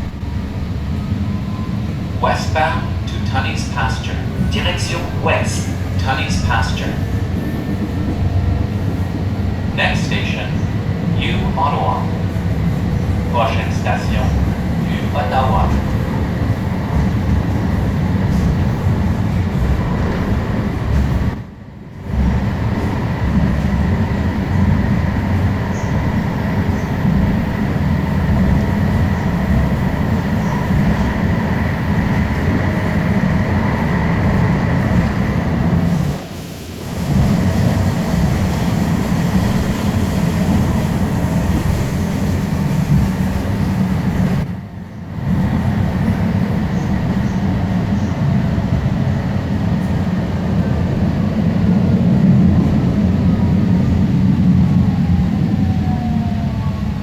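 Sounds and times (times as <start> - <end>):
train rumbling from inside: 0.0 - 57.0.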